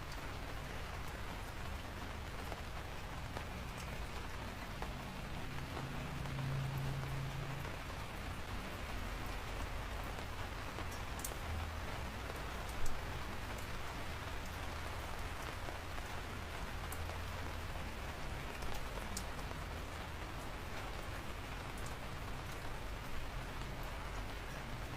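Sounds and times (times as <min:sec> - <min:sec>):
steady rain falling: 0:00.0 - 0:24.9.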